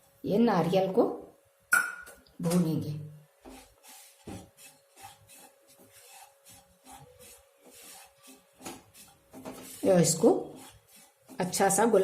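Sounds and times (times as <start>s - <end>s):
spatula scraping in dry pan: 3.4s - 12.0s.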